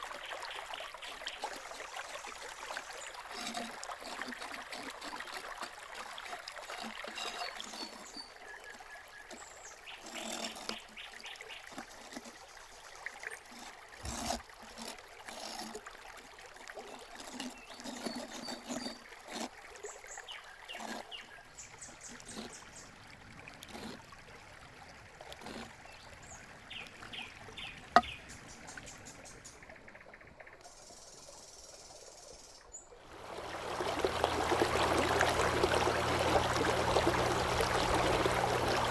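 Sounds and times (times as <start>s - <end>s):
utensils clicking and knocking: 3.4s - 8.2s
small birds chirping: 25.9s - 29.6s.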